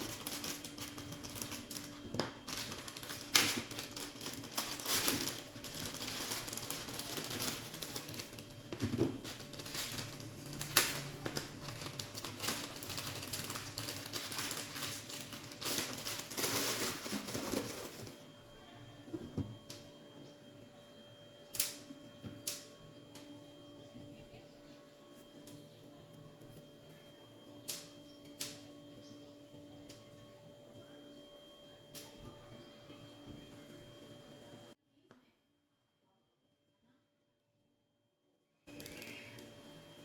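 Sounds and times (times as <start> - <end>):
cardboard and plastic packaging crinkling: 0.0 - 18.2.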